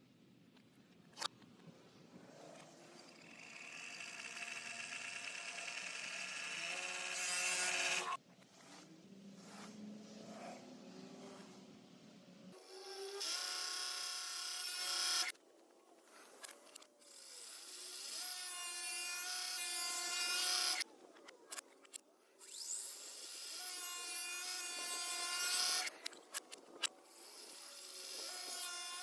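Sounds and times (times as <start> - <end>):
reversed power tool cutting wood: 2.6 - 11.6, 12.6 - 15.3, 17.1 - 20.8, 22.4 - 26.5, 27.1 - 29.0.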